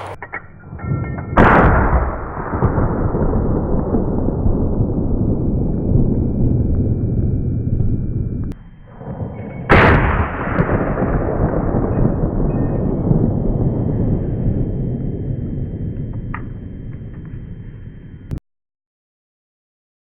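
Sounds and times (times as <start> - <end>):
loud low rumbling noise: 0.0 - 18.4
gunshot: 1.4 - 6.1, 8.5 - 14.8.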